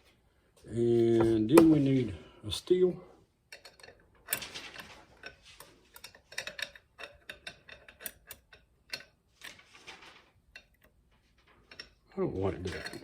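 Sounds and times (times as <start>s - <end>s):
metal clutch plates clinking: 10.4s - 13.0s.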